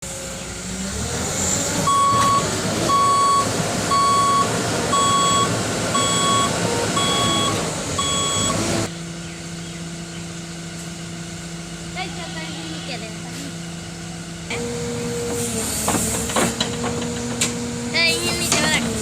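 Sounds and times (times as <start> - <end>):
diesel engine working hard: 0.0 - 19.0
reversing alarm beeping: 1.8 - 8.6.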